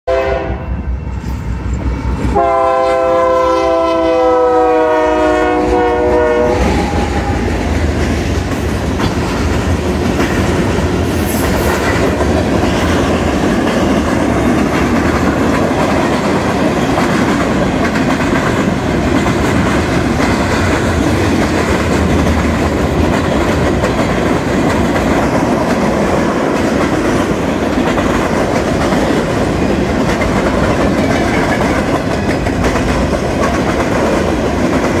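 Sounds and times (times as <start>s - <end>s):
train air horn: 0.0s - 0.9s, 2.3s - 7.6s
train rumbling past: 0.1s - 35.0s
wheels clacking over rail joints: 6.6s - 35.0s.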